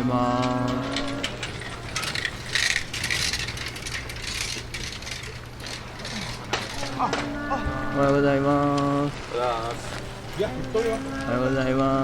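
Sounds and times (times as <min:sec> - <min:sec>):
bicycle freewheel ratcheting: 0:00.0 - 0:07.4.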